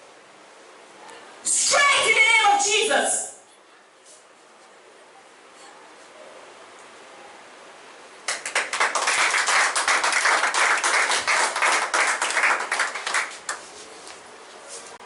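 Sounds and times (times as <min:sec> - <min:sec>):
group of people clapping: 0:08.2 - 0:13.7.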